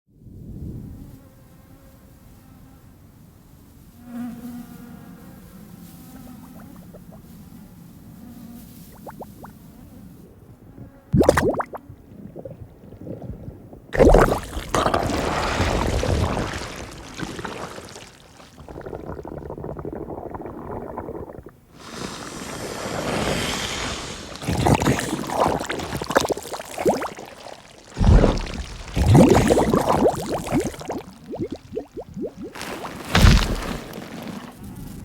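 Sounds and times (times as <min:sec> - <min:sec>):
water gurgling and splashing: 0:08.9 - 0:09.5, 0:11.2 - 0:35.0
wet mud squishing: 0:14.0 - 0:21.6, 0:23.8 - 0:35.0.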